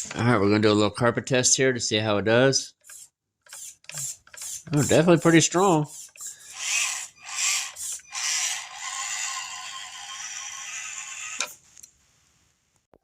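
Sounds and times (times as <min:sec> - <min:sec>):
small electric motor whirring: 0:02.8 - 0:05.0, 0:05.8 - 0:11.6.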